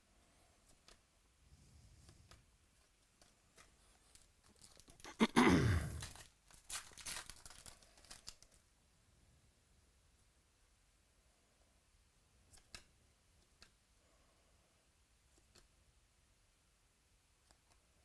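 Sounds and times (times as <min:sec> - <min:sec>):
wrapper crinkling: 0:03.2 - 0:05.2, 0:05.9 - 0:08.7
foil wrapper tearing: 0:04.1 - 0:05.2, 0:05.9 - 0:08.6.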